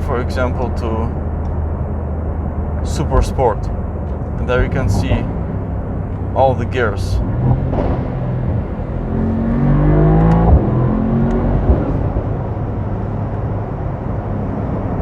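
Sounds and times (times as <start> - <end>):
car engine accelerating: 0.0 - 15.0
road noise: 0.0 - 15.0
gear change crack: 7.2 - 9.1.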